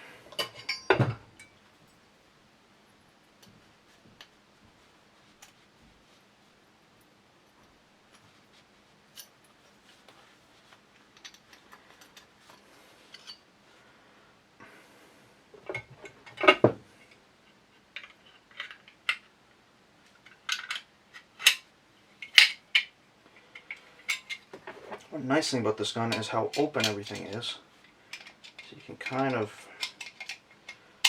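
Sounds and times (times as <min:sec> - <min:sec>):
small metal parts clicking and clinking: 0:00.3 - 0:02.0, 0:11.1 - 0:13.4, 0:17.9 - 0:19.3, 0:20.1 - 0:21.6, 0:22.2 - 0:25.0, 0:28.1 - 0:30.8.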